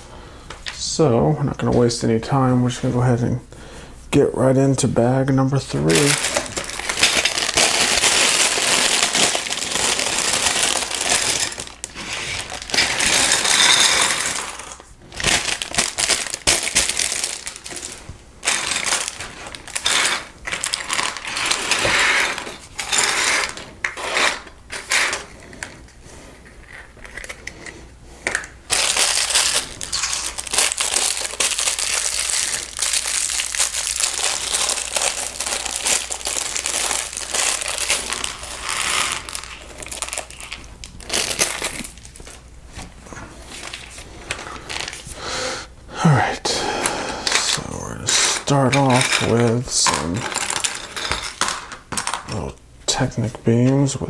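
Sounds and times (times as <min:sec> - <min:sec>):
plastic bag crinkling: 0:05.5 - 0:25.9, 0:26.5 - 0:45.2, 0:47.3 - 0:52.6
plastic bricks clattering: 0:05.8 - 0:25.8, 0:28.3 - 0:42.2, 0:47.3 - 0:52.4.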